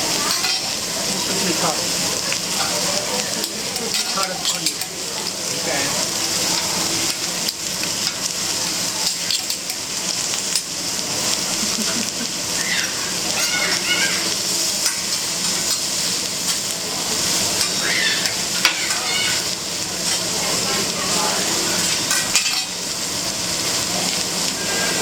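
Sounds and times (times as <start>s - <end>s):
food sizzling on a griddle: 0.0s - 25.0s
metal spatulas clicking and scraping: 0.3s - 0.6s, 3.4s - 5.0s, 9.0s - 9.8s, 21.8s - 22.8s.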